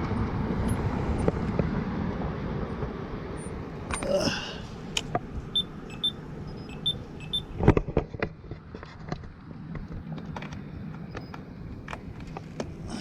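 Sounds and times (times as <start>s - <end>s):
steady low hum: 0.0s - 7.8s
crossing signal beeping: 0.6s - 1.3s, 5.5s - 7.6s.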